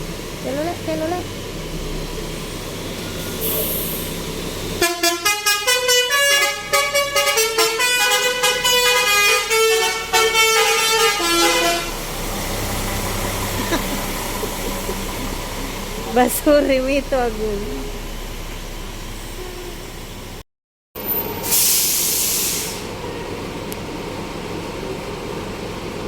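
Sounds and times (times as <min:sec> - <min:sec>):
bus melody horn playing a tune: 0:04.8 - 0:12.0.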